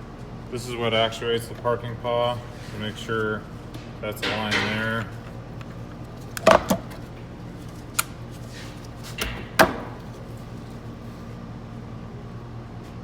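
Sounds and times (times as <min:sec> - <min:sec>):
clicks and knocks of hard parts: 0:06.3 - 0:07.2.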